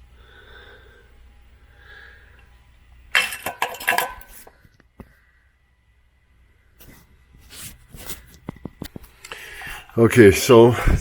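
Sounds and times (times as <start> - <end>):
metal hand tools clinking: 3.2 - 4.3.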